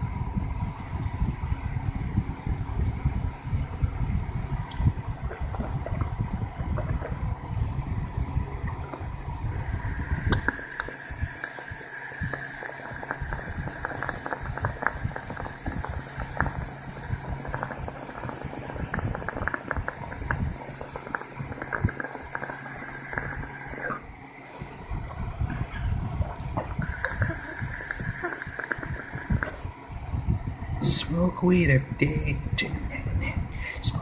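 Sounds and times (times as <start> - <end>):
water bubbling in a bottle: 4.6 - 24.1, 25.0 - 29.8
steady hiss: 8.8 - 24.9, 26.6 - 29.9.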